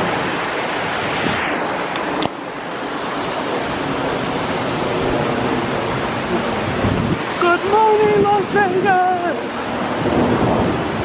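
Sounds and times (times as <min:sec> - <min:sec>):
wind on microphone: 0:00.8 - 0:11.0.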